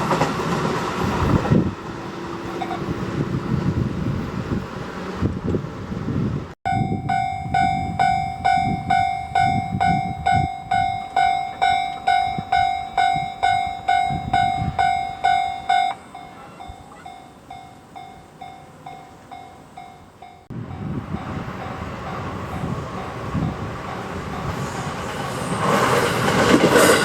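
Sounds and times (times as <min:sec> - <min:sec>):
level-crossing warning bell: 0:06.7 - 0:24.8.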